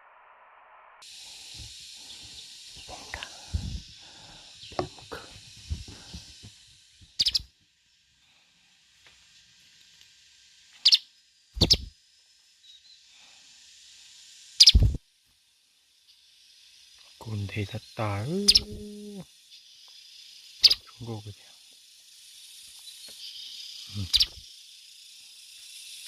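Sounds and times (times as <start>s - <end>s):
forest insects hissing: 1.0s - 26.0s
birds giving sharp high calls: 7.2s - 7.4s, 10.8s - 11.0s, 11.6s - 11.9s, 14.6s - 15.0s, 18.2s - 19.2s, 20.6s - 20.8s, 23.9s - 24.4s.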